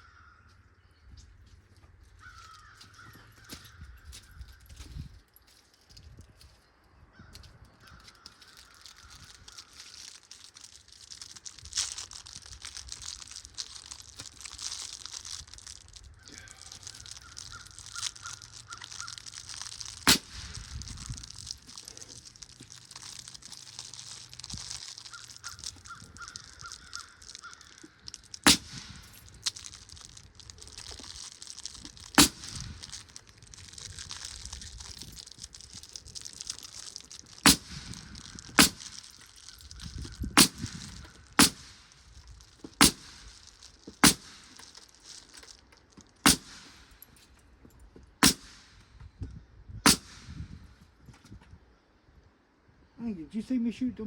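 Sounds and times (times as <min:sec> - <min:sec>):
bird calling: 0:02.1 - 0:04.2, 0:16.0 - 0:22.2, 0:23.8 - 0:28.9.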